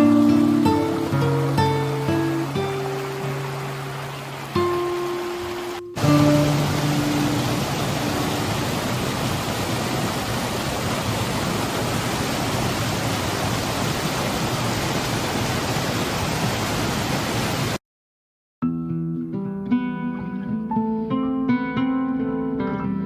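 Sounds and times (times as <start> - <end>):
plucked-string music: 0.0 - 8.5, 18.6 - 23.0
stream water rushing: 0.0 - 17.8.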